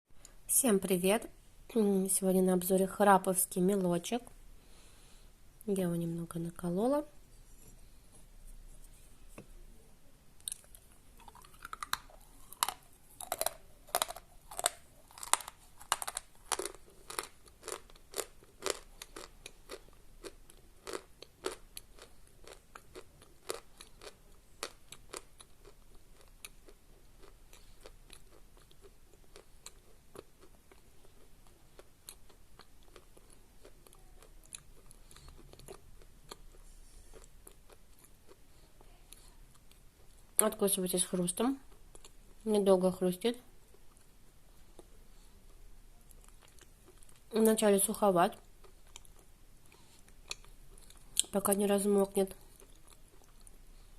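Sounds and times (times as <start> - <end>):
chalk crunching being chewed: 10.4 - 38.4.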